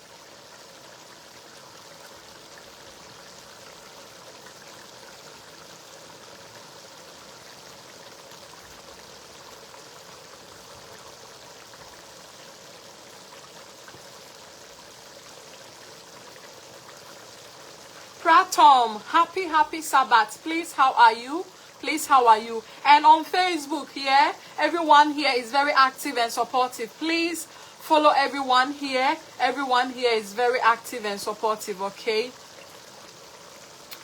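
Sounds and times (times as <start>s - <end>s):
stew cooking hiss: 13.7s - 28.5s.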